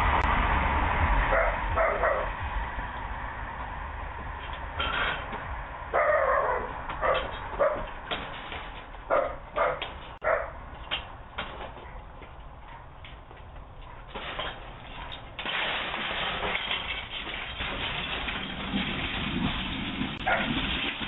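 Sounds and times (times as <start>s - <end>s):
dog barking: 1.3s - 2.4s, 5.9s - 7.9s, 9.1s - 10.6s, 20.2s - 20.6s.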